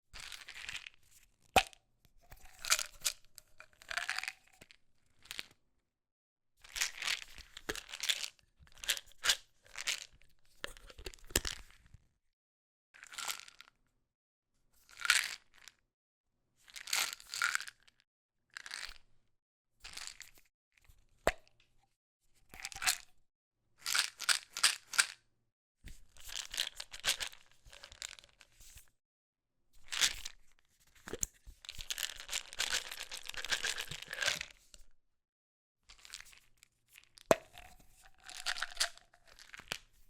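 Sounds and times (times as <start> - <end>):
pill bottle rattling: 2.6 - 3.2, 31.8 - 34.5, 37.3 - 39.8.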